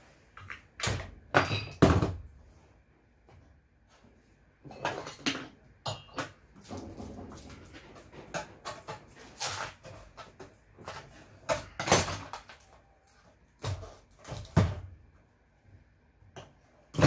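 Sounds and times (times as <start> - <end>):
metal parts knocking and clunking: 4.6 - 13.0.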